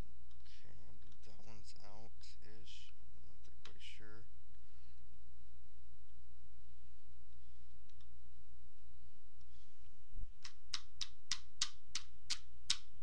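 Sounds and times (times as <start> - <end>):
low electrical hum: 0.0 - 13.0
sharp clicks: 10.4 - 12.9.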